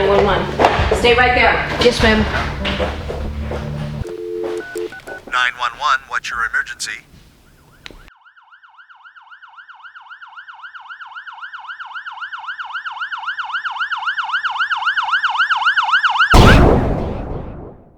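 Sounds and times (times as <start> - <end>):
emergency siren yelping: 7.9 - 16.4.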